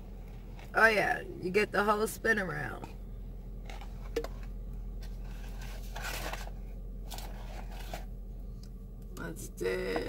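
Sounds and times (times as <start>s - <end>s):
steady low hum: 0.0s - 10.0s
burger wrapper rustling: 5.0s - 8.2s.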